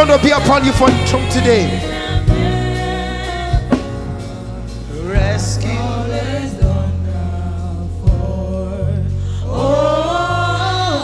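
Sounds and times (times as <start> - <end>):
gospel worship singing: 0.0 - 11.0
sustained bass notes: 0.0 - 11.0
drum strikes: 0.2 - 7.2.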